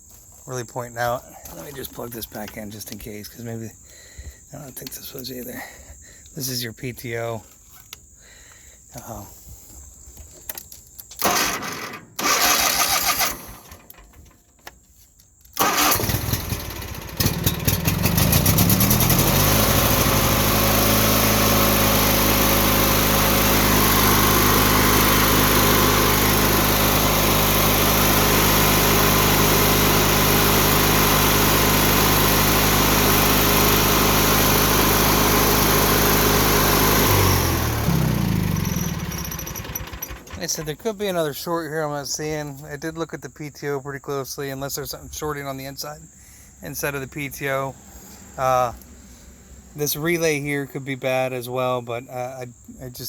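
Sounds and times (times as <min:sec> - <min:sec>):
mower engine cranking: 0:10.5 - 0:14.8, 0:15.4 - 0:40.9
mower engine running: 0:11.2 - 0:14.1, 0:15.6 - 0:40.8.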